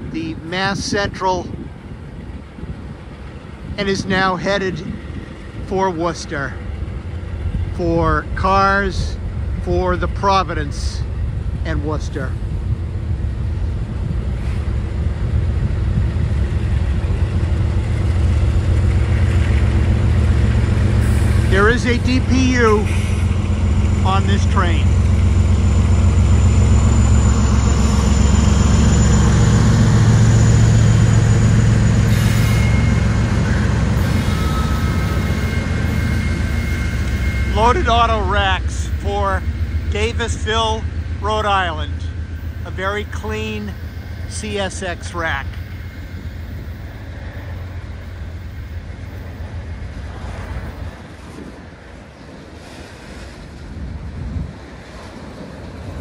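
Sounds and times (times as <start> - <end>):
wind buffeting microphone: 0.0 - 10.2, 10.8 - 21.7, 53.3 - 56.0
diesel locomotive running: 0.0 - 56.0
freight train passing: 0.0 - 56.0
wheels squealing: 16.4 - 40.0.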